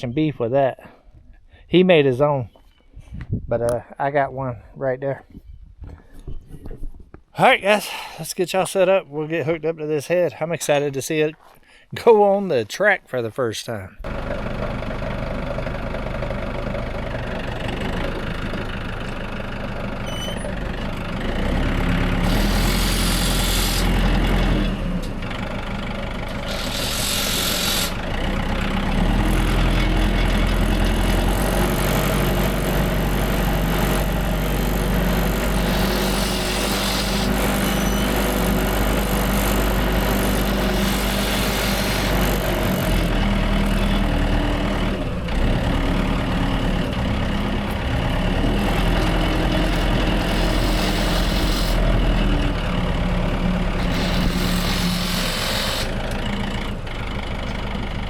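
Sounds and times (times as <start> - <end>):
tractor engine running: 14.0 - 58.0
short bursts of hiss: 26.5 - 28.0, 50.3 - 51.8, 53.8 - 56.0.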